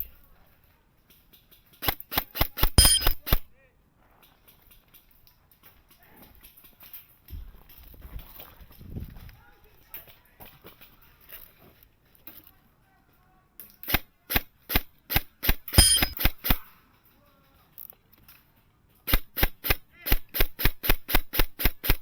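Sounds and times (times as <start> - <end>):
airsoft rifle shots: 1.8 - 3.5, 13.8 - 16.7, 19.1 - 22.0.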